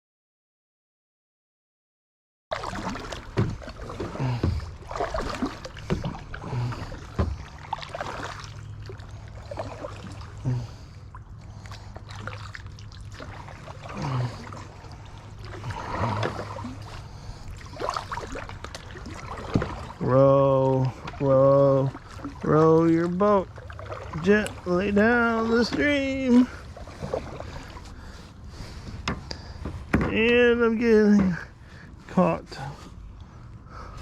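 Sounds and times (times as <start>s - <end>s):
paddle splashing in water: 2.5s - 31.9s
steady low hum: 2.5s - 34.0s.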